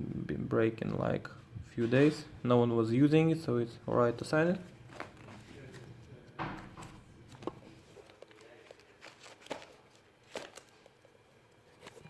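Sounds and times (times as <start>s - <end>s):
paper rustling: 4.8s - 12.0s.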